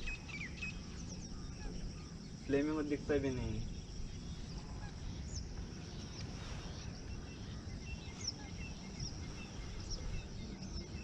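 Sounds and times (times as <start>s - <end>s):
high insect drone: 0.0s - 11.0s.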